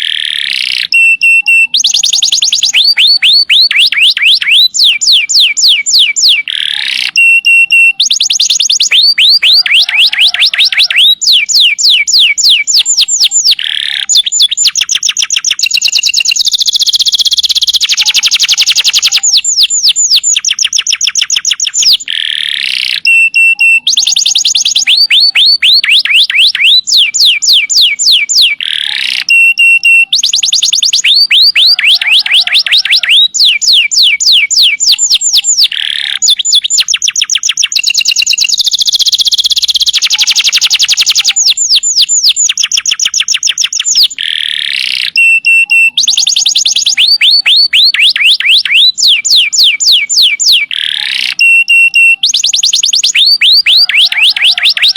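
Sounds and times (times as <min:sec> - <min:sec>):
canary singing trills: 0:00.0 - 0:54.9.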